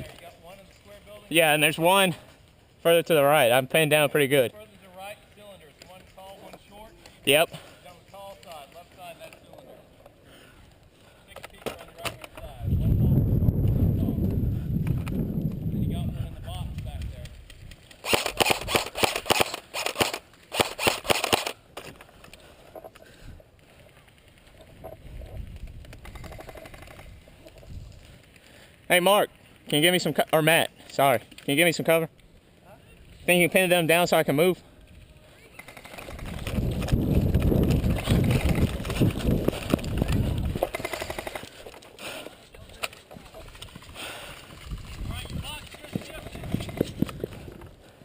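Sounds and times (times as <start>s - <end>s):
airsoft gun firing bursts: 18.0s - 21.6s, 35.6s - 39.2s, 40.5s - 41.5s
rapid clicks: 23.6s - 27.6s, 35.6s - 42.0s.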